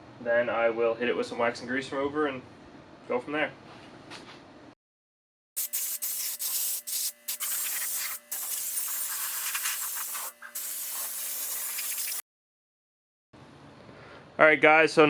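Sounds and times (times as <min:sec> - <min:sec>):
air blow gun hissing: 0:05.6 - 0:12.2.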